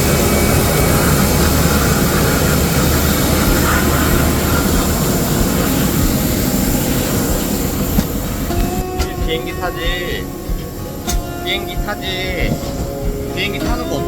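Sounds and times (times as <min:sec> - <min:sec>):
aircraft engine rumble: 0:00.0 - 0:14.0
high engine whine: 0:00.0 - 0:14.0.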